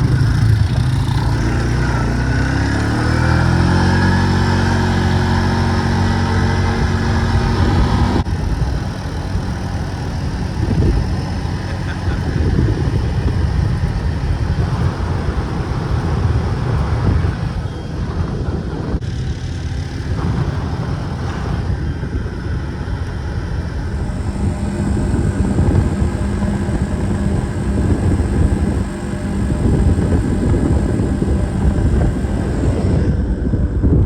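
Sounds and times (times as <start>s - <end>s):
atv engine running: 0.0s - 34.0s
low rumble of ride noise: 0.0s - 34.0s.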